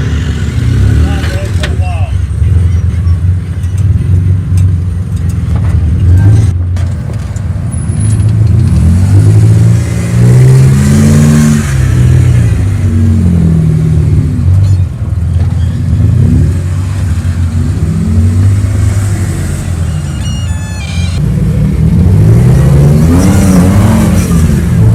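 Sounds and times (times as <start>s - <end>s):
engine revving: 8.5s - 14.5s, 15.8s - 24.9s.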